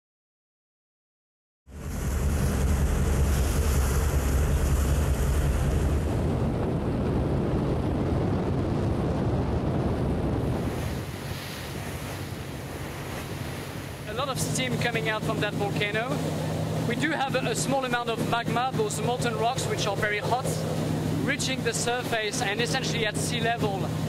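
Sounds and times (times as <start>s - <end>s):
steady low rumble: 1.7s - 11.3s
wind buffeting microphone: 1.7s - 22.4s
sea waves: 1.7s - 24.0s.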